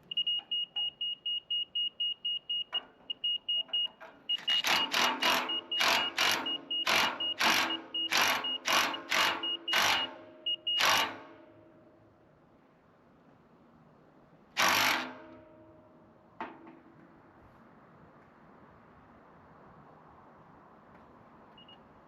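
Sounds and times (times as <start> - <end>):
rapid high beeping: 0.0 - 11.1.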